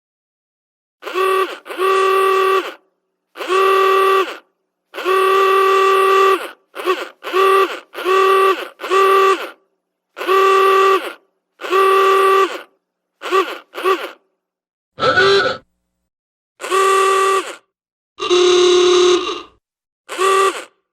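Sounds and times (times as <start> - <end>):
antique car horn honking: 1.0 - 2.8, 3.4 - 9.6, 10.2 - 12.7, 16.6 - 20.8.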